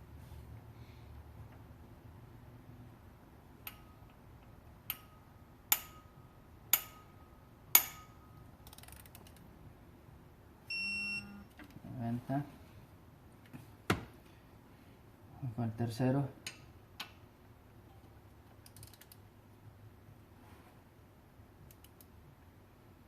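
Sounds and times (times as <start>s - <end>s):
torque wrench clicks: 8.6s - 9.4s, 18.6s - 19.2s
steady beep: 10.7s - 11.4s.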